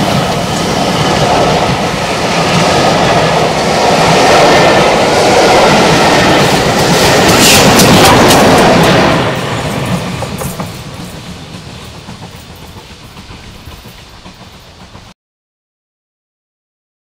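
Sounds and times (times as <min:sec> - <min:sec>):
steam train passing: 0:00.0 - 0:15.2
wheels clicking over rail joints: 0:06.3 - 0:15.1.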